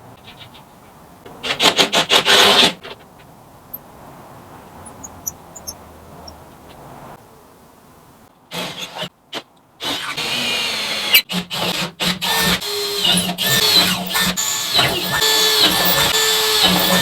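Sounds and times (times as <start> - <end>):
power drill running: 9.8 - 17.0.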